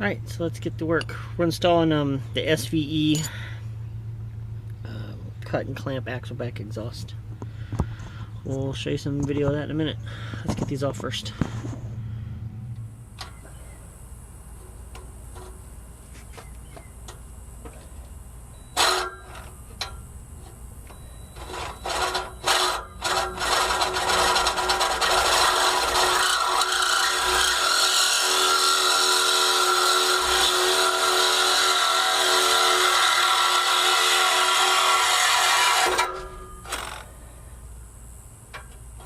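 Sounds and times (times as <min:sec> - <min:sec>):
saw cutting steel pipe: 0:18.8 - 0:19.5, 0:21.4 - 0:37.1.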